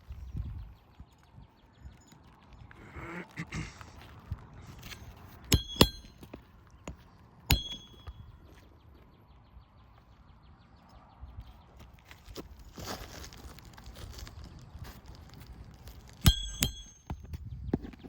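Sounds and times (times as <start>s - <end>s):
ringing clinks of hard objects: 4.7s - 6.4s, 7.5s - 8.3s, 16.2s - 17.4s.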